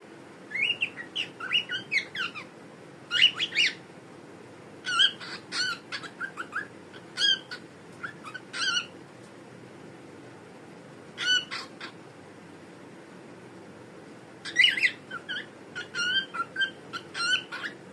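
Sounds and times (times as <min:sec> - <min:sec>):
cockatiel whistled chirps: 0:00.5 - 0:02.5, 0:03.1 - 0:03.8, 0:04.9 - 0:08.9, 0:14.4 - 0:17.8.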